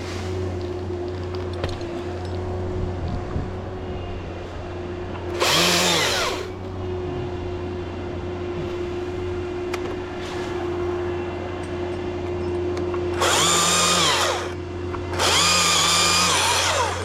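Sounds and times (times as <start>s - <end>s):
chainsaw throttle rev: 5.3s - 6.5s, 13.2s - 17.0s
chainsaw idling: 5.3s - 7.5s, 13.2s - 17.0s.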